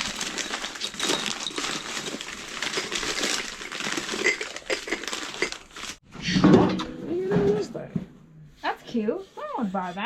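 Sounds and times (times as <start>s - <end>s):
glassware clattering and clinking: 0.0s - 5.6s.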